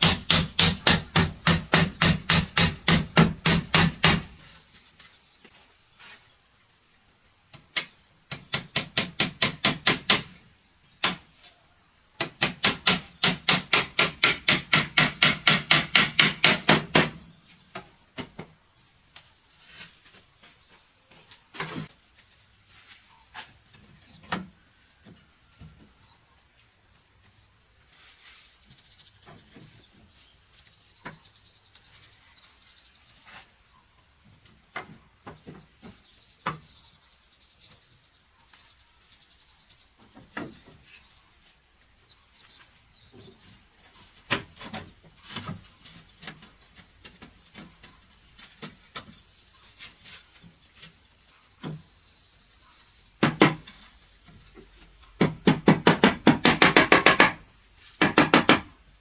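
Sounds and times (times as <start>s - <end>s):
hammer striking wood: 0.0s - 4.4s, 7.8s - 10.4s, 12.2s - 17.2s, 53.2s - 53.7s, 55.2s - 57.4s, 58.0s - 58.7s
high insect drone: 0.0s - 59.0s.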